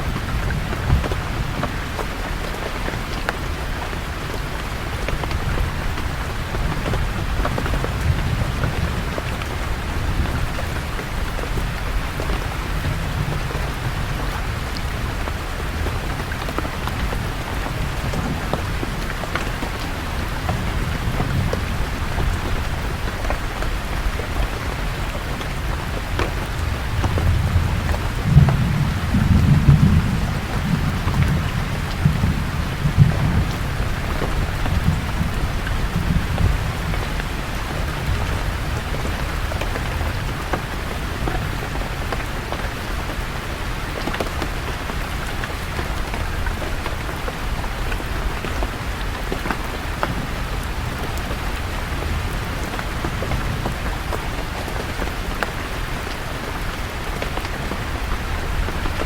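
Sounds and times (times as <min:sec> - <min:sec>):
rain falling on leaves: 0:00.0 - 0:59.0
low thunder rumble: 0:04.9 - 0:42.1.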